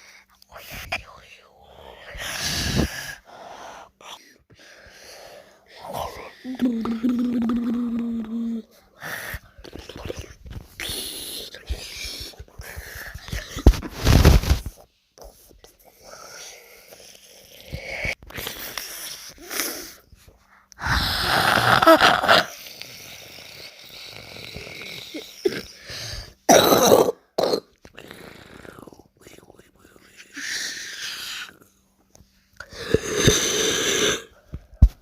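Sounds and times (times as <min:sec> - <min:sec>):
quiet breathy sounds: 0:00.0 - 0:13.8, 0:14.8 - 0:21.3, 0:27.9 - 0:35.0
rough throat and breathing noises: 0:00.0 - 0:31.8, 0:32.6 - 0:35.0.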